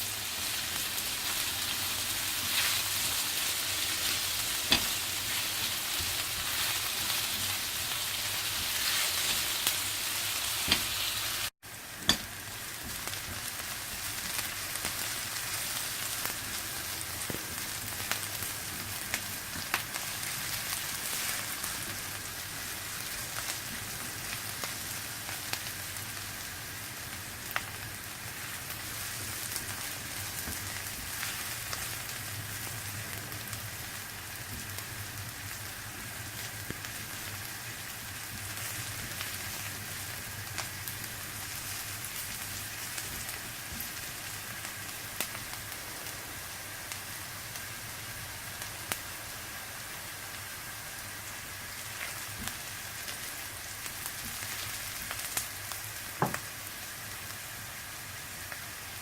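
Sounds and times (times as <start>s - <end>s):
stir-fry sizzling in oil: 0.0s - 59.0s.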